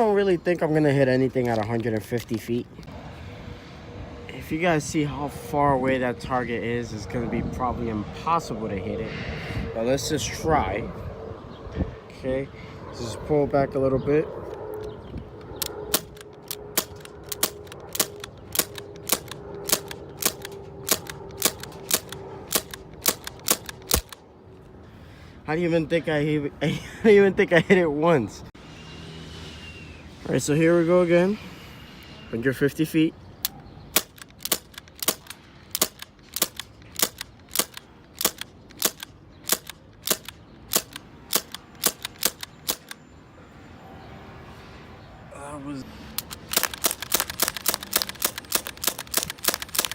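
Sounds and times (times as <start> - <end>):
air pistol firing sharp pops: 15.6 - 24.2, 33.9 - 43.0, 46.2 - 49.9
airsoft pistol shots: 15.9 - 24.2.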